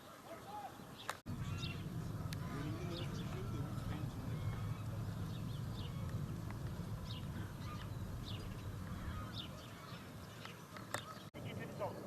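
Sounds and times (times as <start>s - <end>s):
birds chirping: 0.0s - 12.0s
steady low rumble: 1.3s - 10.4s.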